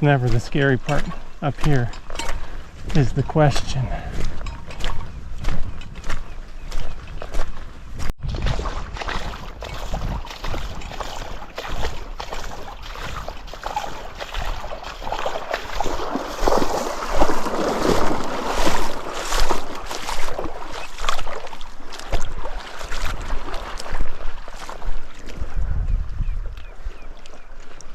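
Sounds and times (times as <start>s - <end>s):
short sharp water splashes: 0.2s - 25.4s
creek water rushing: 9.0s - 24.9s.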